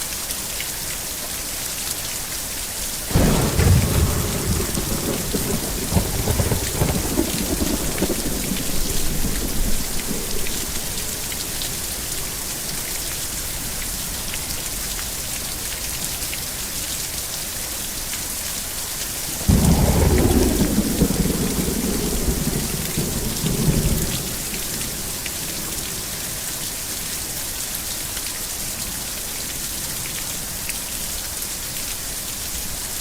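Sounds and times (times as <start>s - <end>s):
heavy rain hissing: 2.2s - 31.1s
loud thunder crack: 3.1s - 13.4s, 19.3s - 26.5s
thunder rumbling: 3.1s - 14.3s, 19.2s - 26.8s.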